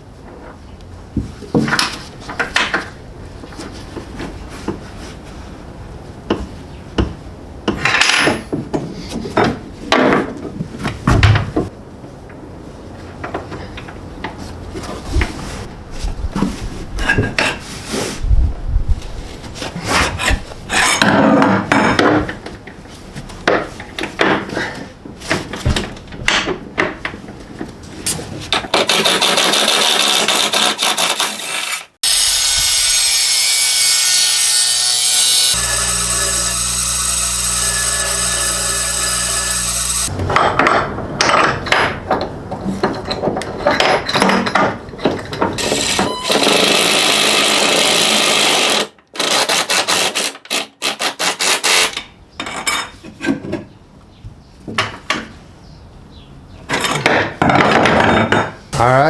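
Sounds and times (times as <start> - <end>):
tools scraping on metal: 28.1 - 40.1, 45.6 - 46.6
harsh whirring: 32.0 - 40.1, 45.6 - 47.2.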